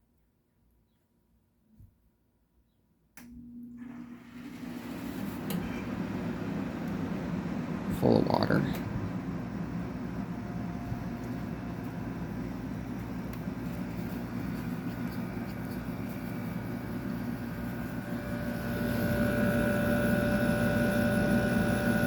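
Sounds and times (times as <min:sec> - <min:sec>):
air conditioner humming: 0:03.2 - 0:22.0
steady whine: 0:05.5 - 0:22.0.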